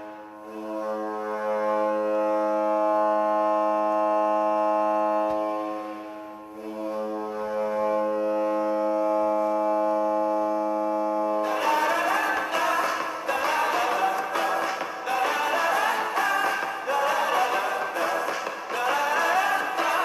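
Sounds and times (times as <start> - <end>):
goal horn blasts: 0.0 - 13.3.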